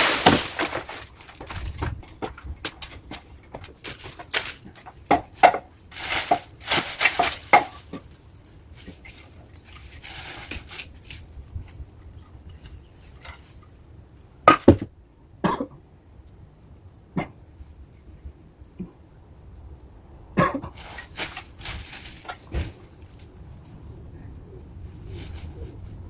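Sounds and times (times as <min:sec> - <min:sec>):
rope rustling in tree branches: 0:00.0 - 0:13.8, 0:20.7 - 0:26.0.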